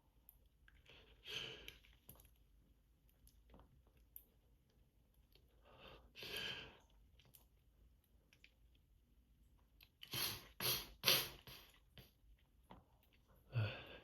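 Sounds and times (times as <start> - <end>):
person sneezing: 10.1 - 11.8.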